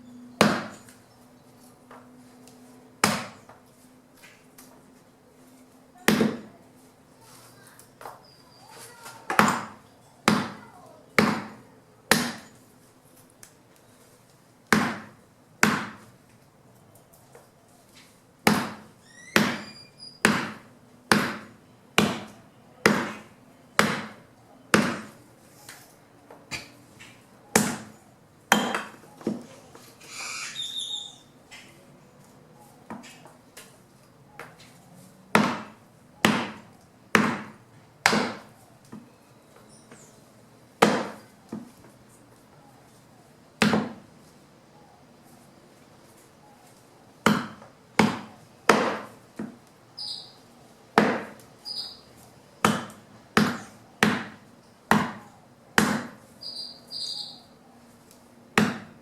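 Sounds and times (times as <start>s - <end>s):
blade chopping branches: 3.0s - 3.6s, 8.8s - 12.6s, 14.7s - 16.1s, 18.4s - 25.8s, 35.3s - 38.5s, 40.8s - 41.7s, 47.2s - 49.6s, 51.0s - 51.5s, 52.6s - 56.2s.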